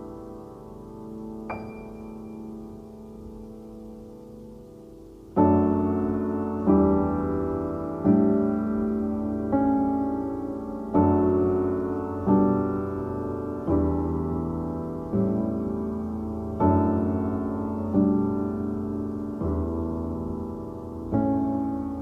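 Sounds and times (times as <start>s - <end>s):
slow piano music: 0.0s - 22.0s.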